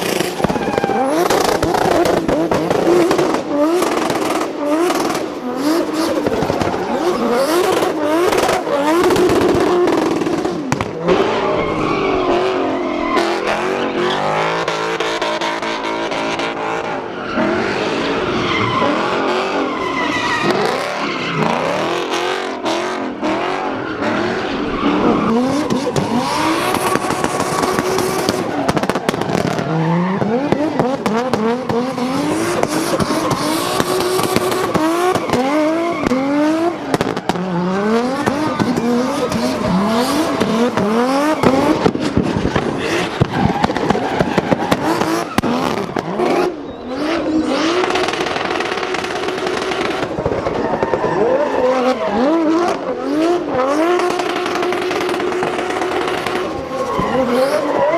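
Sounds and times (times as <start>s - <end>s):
tyre squeal: 0.0s - 2.1s, 16.9s - 22.5s, 23.3s - 28.6s, 55.8s - 57.9s
car engines revving hard: 0.0s - 57.9s.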